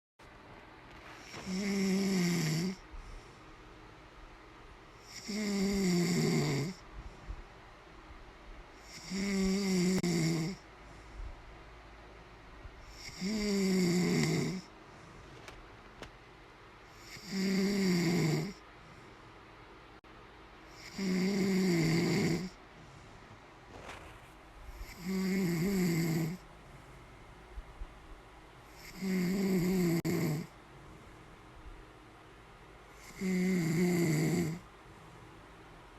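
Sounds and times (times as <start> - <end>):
man snoring: 1.2 - 2.8, 5.0 - 6.8, 8.8 - 10.6, 12.9 - 14.7, 17.0 - 18.6, 20.7 - 22.6, 24.8 - 26.4, 28.8 - 30.6, 33.0 - 34.7.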